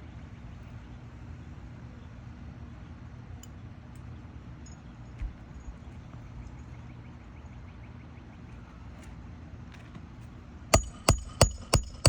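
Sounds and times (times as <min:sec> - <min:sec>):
hammer striking nail metallic ring: 0:10.8 - 0:12.0.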